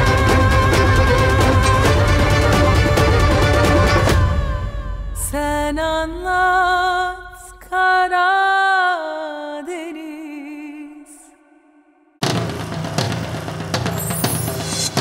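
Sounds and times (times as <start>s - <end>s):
person singing with vibrato: 0.0s - 3.0s, 4.3s - 12.1s.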